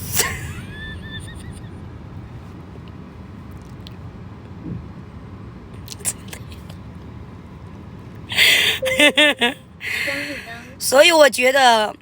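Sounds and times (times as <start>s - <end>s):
car cabin road rumble: 0.0s - 8.3s.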